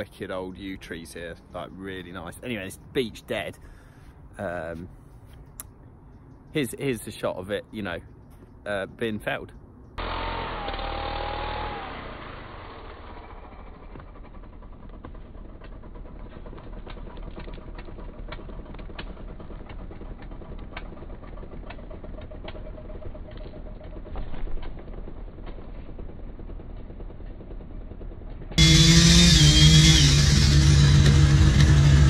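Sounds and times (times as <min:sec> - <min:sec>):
chainsaw idling: 0:10.0 - 0:32.0
wood cracking: 0:14.0 - 0:25.8.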